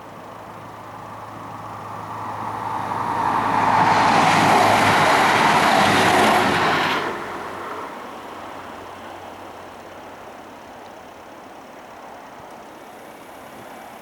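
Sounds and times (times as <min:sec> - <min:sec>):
vehicle passing close by: 0:01.0 - 0:08.1.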